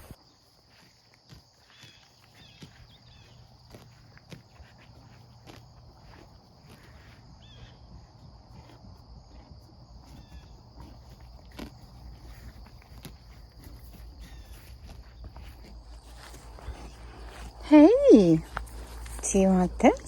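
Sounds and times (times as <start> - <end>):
crickets chirping chorus: 0.0 - 20.0
rustles of movement: 9.8 - 20.0.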